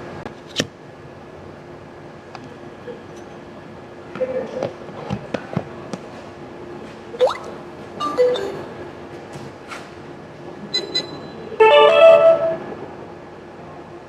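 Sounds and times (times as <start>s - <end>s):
short electronic beeps: 7.2s - 8.7s
quick rising squeak: 10.8s - 11.4s.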